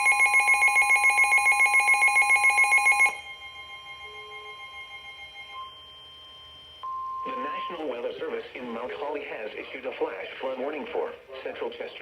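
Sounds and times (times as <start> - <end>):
pulsing electronic alarm tone: 0.0 - 8.0.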